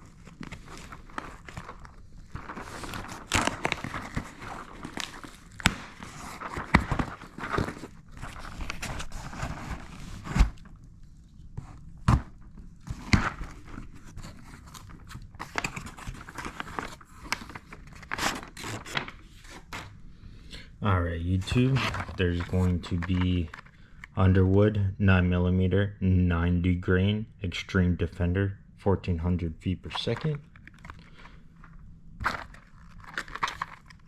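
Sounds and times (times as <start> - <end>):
cardboard and packing rustling: 0.0 - 20.0, 21.5 - 23.8, 30.0 - 34.0.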